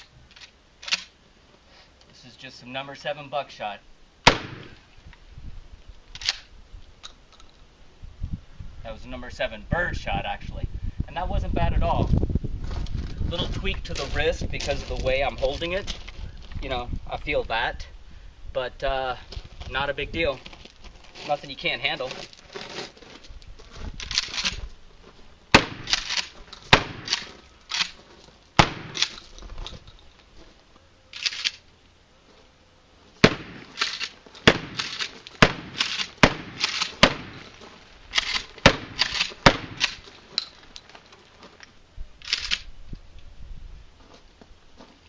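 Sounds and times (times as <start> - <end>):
loud gunshots: 4.3 - 4.8, 25.5 - 26.0, 26.7 - 27.2, 28.6 - 29.0, 33.2 - 33.8, 34.5 - 37.4, 38.6 - 39.9.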